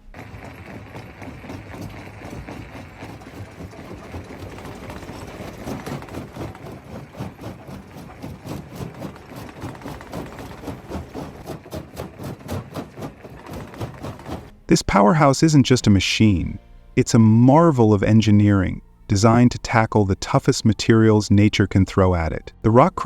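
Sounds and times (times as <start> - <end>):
clatter of knocks and rattles: 0.0 - 14.6
rock crusher drone: 0.0 - 14.6.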